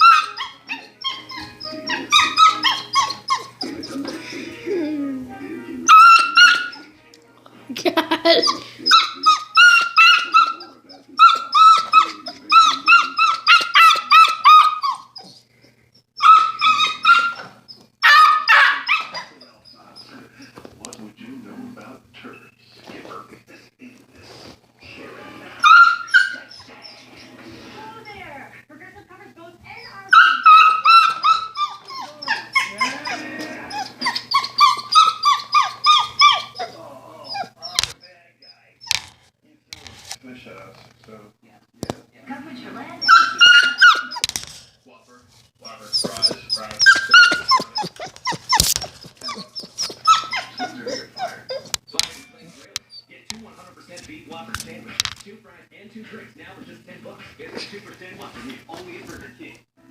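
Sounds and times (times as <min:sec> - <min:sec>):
young dog yelping: 0:00.0 - 0:04.2, 0:05.8 - 0:06.9, 0:08.3 - 0:15.5, 0:16.2 - 0:20.1, 0:25.6 - 0:27.1, 0:29.8 - 0:38.0, 0:43.0 - 0:44.3, 0:45.9 - 0:52.0.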